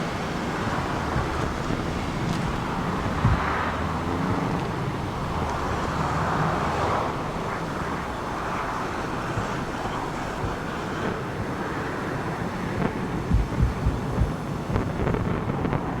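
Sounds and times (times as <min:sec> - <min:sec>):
steady rush of noise: 0:00.0 - 0:16.0
rally car engine running: 0:00.5 - 0:04.4, 0:13.3 - 0:15.1.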